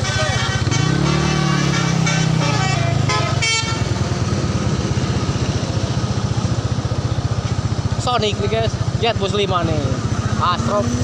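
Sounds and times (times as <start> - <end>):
bus horn playing a tune: 0.0 - 4.0
bus engine running: 0.0 - 11.0.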